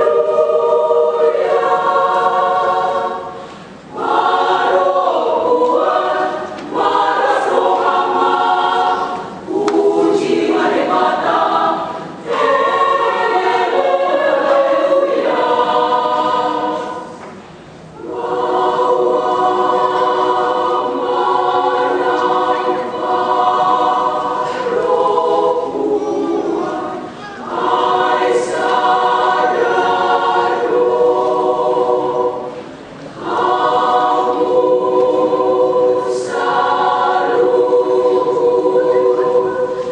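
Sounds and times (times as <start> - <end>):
women's choir singing: 0.0 - 39.9.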